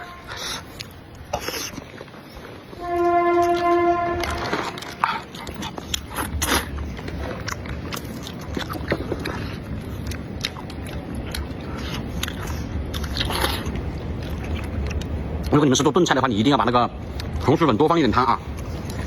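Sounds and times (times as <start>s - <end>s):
person biting and chewing food: 0.3s - 2.5s, 3.4s - 15.5s.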